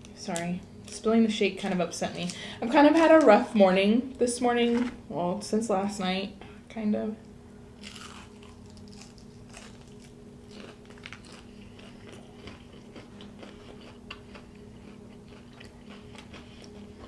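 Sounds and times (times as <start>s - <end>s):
chewing crispy onion ring: 7.8s - 17.0s.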